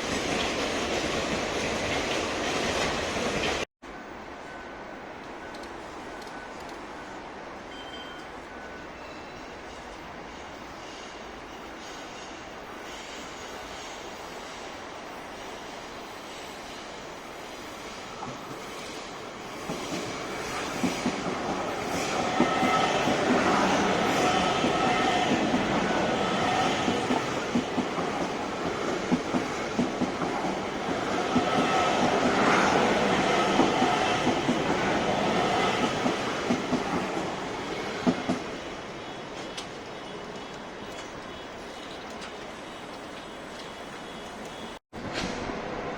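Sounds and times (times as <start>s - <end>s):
train wheels clacking over rails: 9.6s - 42.4s.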